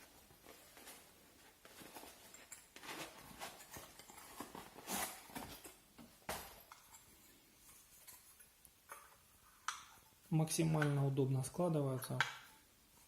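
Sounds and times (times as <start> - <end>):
light handling clicks and rustles: 0.0 - 10.1.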